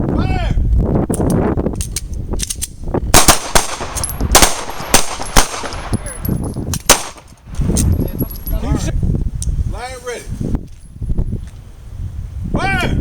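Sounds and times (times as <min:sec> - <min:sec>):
pistol shots: 0:03.1 - 0:07.4.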